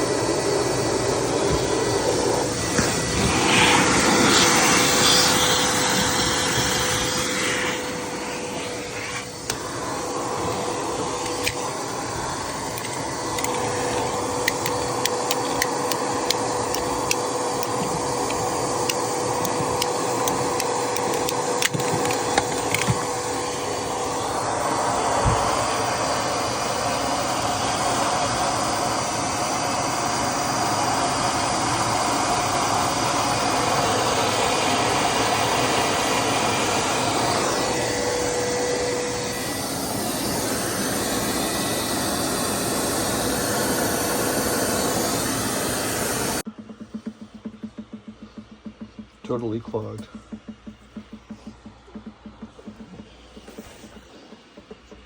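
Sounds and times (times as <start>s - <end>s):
wet dry vacuum sucking: 0.0s - 47.3s
small clicks: 14.4s - 23.0s.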